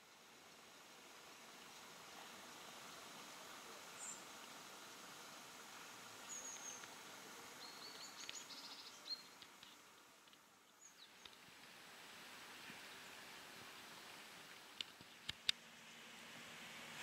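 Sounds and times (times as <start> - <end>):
faint birds chirping: 0.0 - 11.7
low steady background hiss: 0.0 - 17.0.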